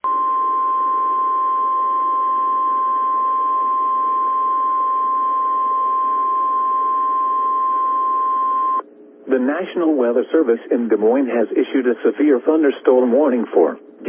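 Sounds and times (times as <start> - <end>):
steady high alarm tone: 0.0 - 8.8.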